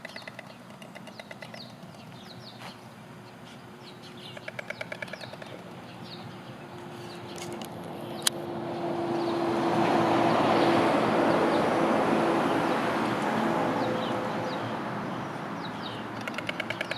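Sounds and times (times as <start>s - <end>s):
storks bill-clattering: 0.0s - 6.1s, 16.0s - 16.9s
small birds chirping: 0.0s - 8.4s, 13.8s - 16.9s
road traffic: 0.0s - 16.9s.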